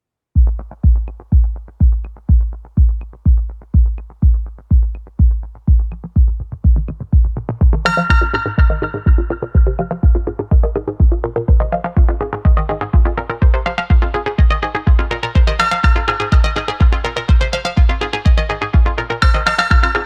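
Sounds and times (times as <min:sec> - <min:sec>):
electronic music with kick drum: 0:00.4 - 0:20.0
bright synth chords: 0:06.8 - 0:20.0.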